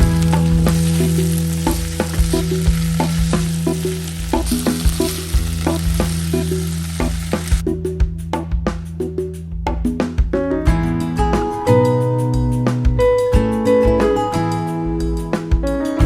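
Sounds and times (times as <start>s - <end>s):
food sizzling in a pan: 0.0s - 7.6s.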